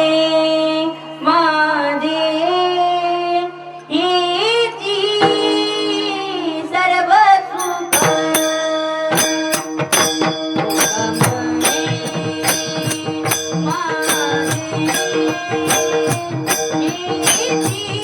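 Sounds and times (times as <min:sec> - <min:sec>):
person singing devotional song: 0:00.0 - 0:18.0
ringing percussion strikes: 0:05.2 - 0:06.8, 0:07.5 - 0:18.0.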